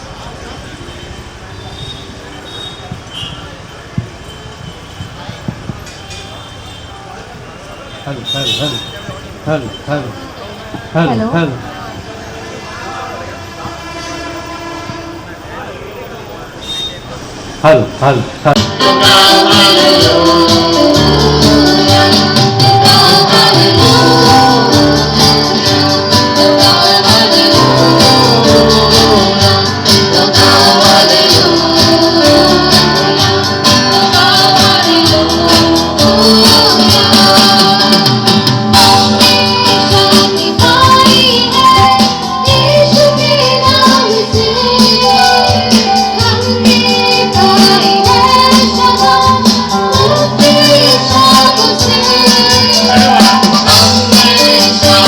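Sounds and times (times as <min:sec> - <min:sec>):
person singing over bass: 0:18.5 - 0:55.0.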